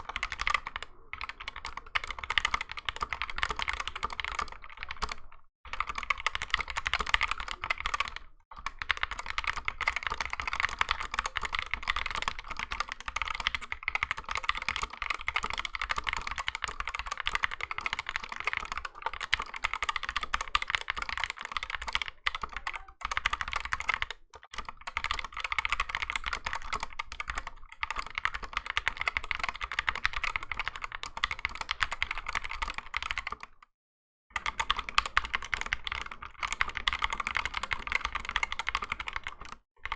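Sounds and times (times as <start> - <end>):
fast typing on mechanical keyboard: 0.0 - 33.7, 34.3 - 39.9.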